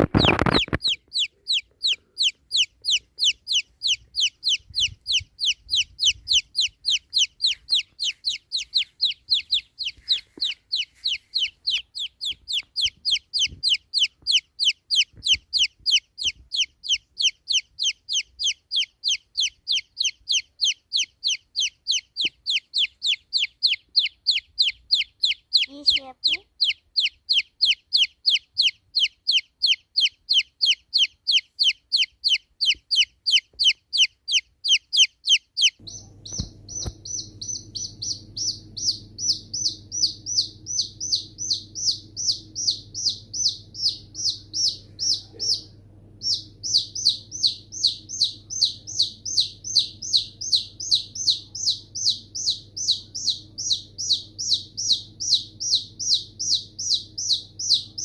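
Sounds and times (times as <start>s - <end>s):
steady low hum: 0.0s - 17.2s, 35.8s - 58.0s
baby chicks peeping: 0.0s - 58.0s.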